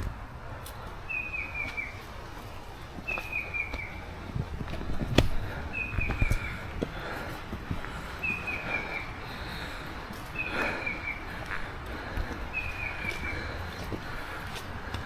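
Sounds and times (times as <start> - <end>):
forest bird call: 1.0 - 2.0, 3.0 - 4.1, 5.6 - 6.7, 8.2 - 11.4, 12.5 - 13.6
footsteps: 4.6 - 8.0, 11.4 - 15.0.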